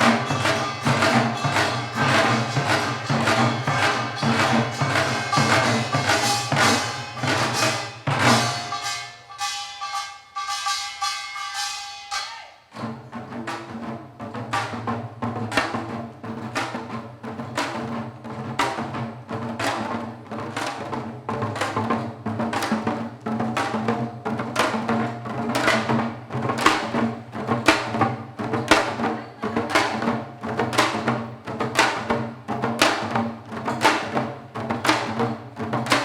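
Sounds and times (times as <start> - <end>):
hourglass drum strikes: 0.0 - 9.1.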